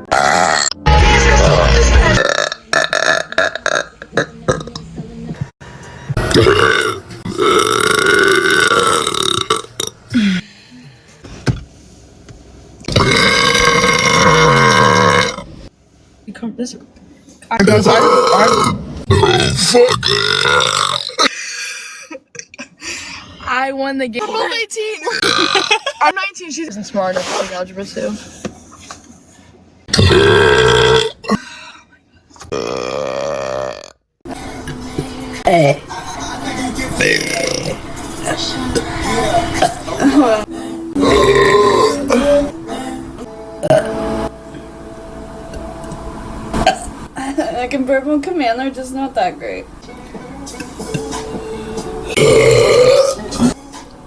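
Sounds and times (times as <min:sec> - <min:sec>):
girl belching: 0:00.0 - 0:04.8, 0:06.2 - 0:10.4, 0:12.9 - 0:15.5, 0:17.6 - 0:21.3, 0:25.0 - 0:25.9, 0:29.9 - 0:31.4, 0:32.5 - 0:34.0, 0:37.0 - 0:37.8, 0:38.8 - 0:42.5, 0:43.6 - 0:44.0, 0:46.6 - 0:46.9, 0:52.1 - 0:53.6
woman burping loudly: 0:00.0 - 0:04.8, 0:06.2 - 0:10.4, 0:12.9 - 0:15.5, 0:17.6 - 0:21.4, 0:25.0 - 0:26.1, 0:29.9 - 0:31.5, 0:32.5 - 0:34.0, 0:37.0 - 0:37.8, 0:39.2 - 0:42.5, 0:43.6 - 0:44.0, 0:46.6 - 0:47.6, 0:52.2 - 0:53.6.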